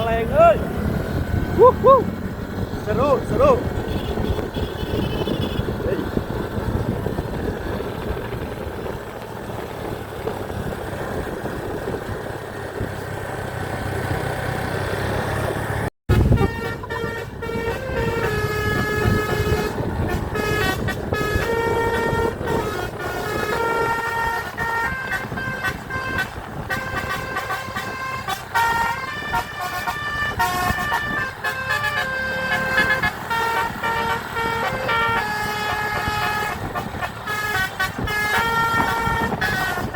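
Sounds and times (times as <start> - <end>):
bus engine and road noise: 0.0 - 39.9
multi-tone bus horn melody: 2.9 - 7.8, 16.1 - 39.9.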